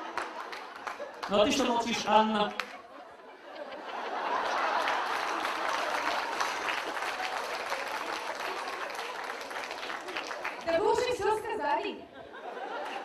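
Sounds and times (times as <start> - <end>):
audience applauding: 0.0 - 2.8, 3.8 - 11.2.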